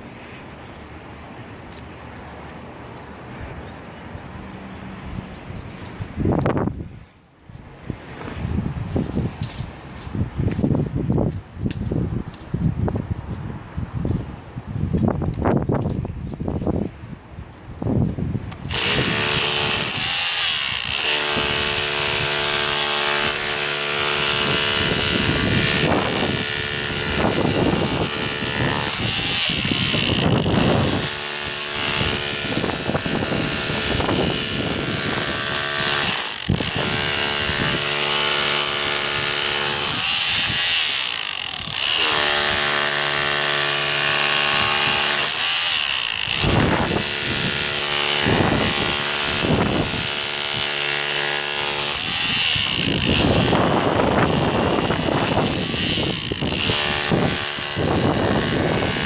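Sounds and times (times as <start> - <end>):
power tool motor humming: 18.5 - 59.0.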